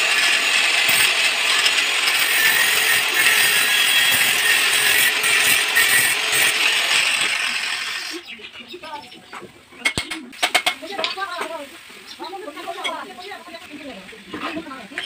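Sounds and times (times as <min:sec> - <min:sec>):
power tool hissing: 0:00.0 - 0:08.2.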